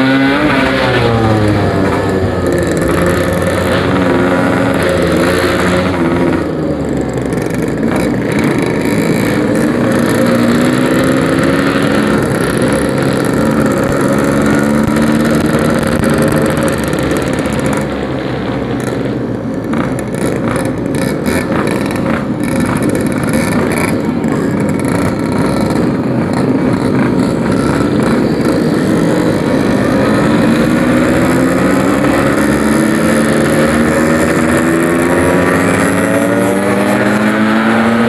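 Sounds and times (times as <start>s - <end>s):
two-stroke motorcycle engine revving: 0.0s - 38.0s.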